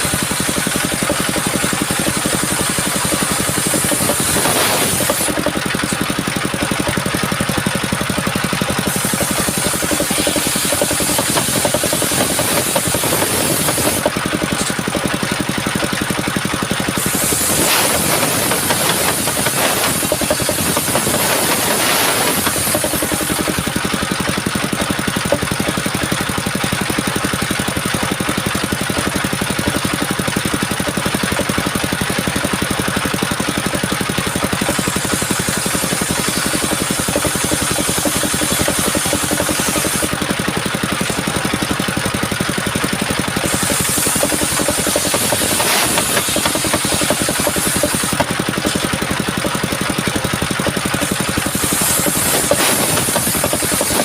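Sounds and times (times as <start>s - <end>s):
circular sawmill blade whining: 0.0s - 54.0s.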